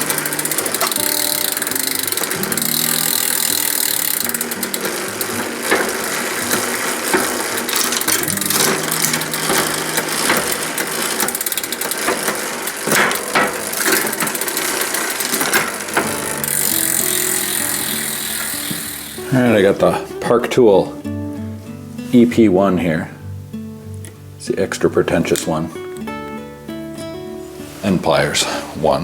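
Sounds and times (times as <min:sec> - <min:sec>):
chain running over cogs: 0:00.0 - 0:19.4
bicycle freewheel ticking: 0:00.0 - 0:19.6.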